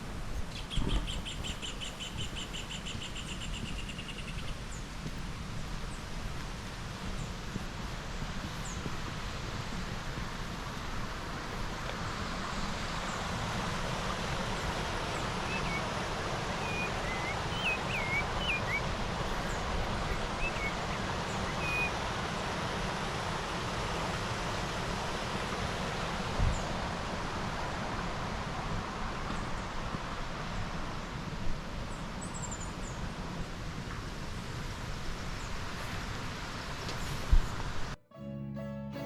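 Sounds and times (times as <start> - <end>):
bird chirps: 0.5 - 4.6, 15.4 - 15.9, 16.6 - 21.9
waterfall rushing: 4.8 - 29.9.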